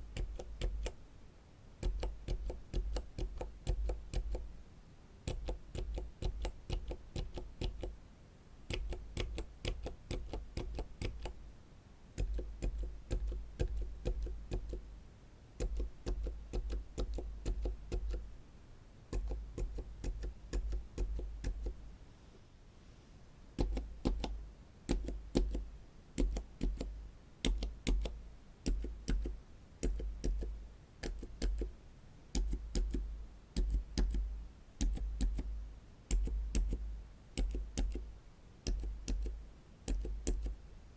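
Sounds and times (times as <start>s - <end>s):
dampened keyboard keystrokes: 5.3s - 7.9s, 8.7s - 11.4s, 15.6s - 18.2s, 23.6s - 25.6s, 37.4s - 38.0s, 38.6s - 40.6s.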